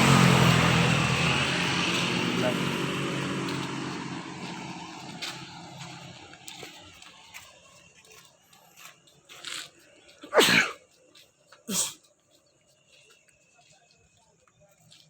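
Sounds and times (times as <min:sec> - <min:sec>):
vehicle engine dying: 0:00.0 - 0:06.8.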